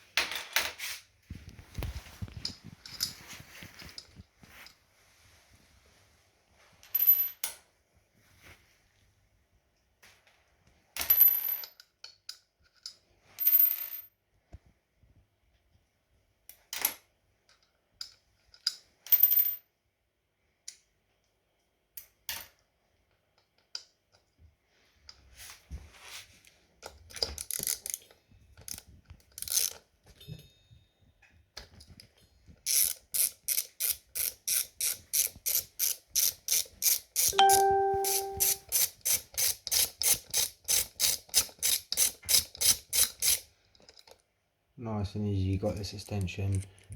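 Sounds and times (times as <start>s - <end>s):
ratchet wrench clicking: 29.4s - 29.8s, 32.7s - 37.4s, 38.4s - 43.4s.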